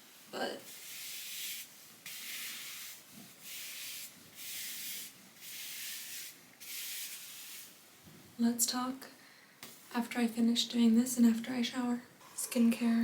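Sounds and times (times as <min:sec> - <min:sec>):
body brush scrubbing skin: 0:00.6 - 0:07.8.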